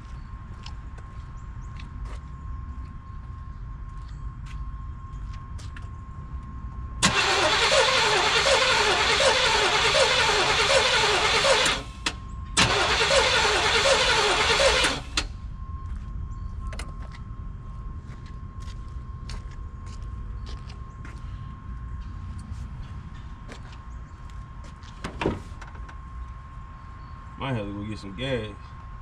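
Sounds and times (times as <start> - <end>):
starter motor cranking engine: 7.0 - 15.3.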